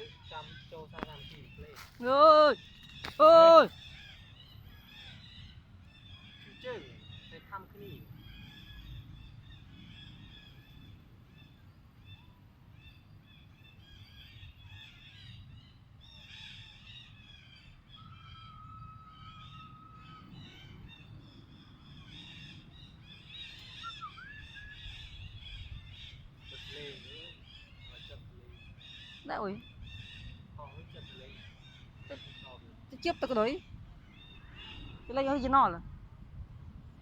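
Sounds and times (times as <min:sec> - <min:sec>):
high animal calls: 0:23.7 - 0:25.2.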